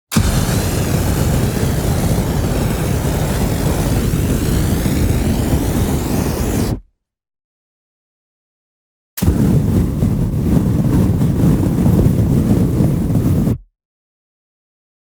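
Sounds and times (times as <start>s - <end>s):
large fire burning and crackling: 0.1s - 6.8s, 9.2s - 13.6s.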